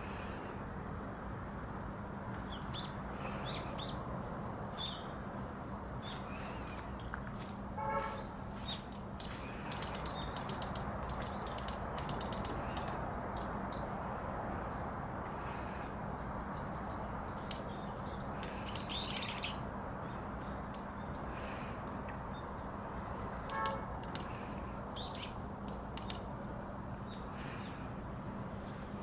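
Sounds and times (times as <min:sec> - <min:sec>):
faint high ticks: 0:08.9 - 0:13.8
thin bird chirp: 0:16.2 - 0:21.7, 0:25.0 - 0:25.4.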